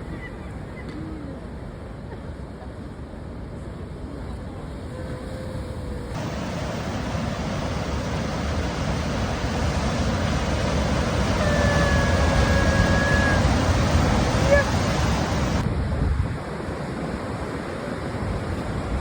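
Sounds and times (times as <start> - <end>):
steady rushing noise: 6.1 - 17.4.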